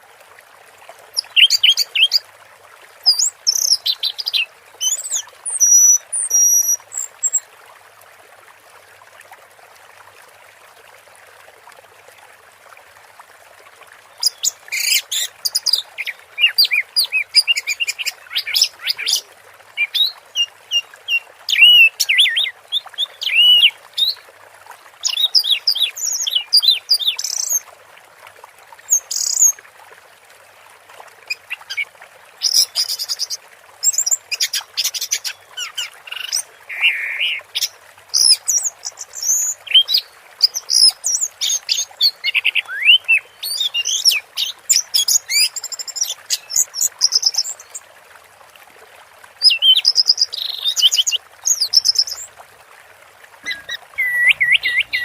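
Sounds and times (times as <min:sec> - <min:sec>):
bird chirping: 0:53.4 - 0:55.0.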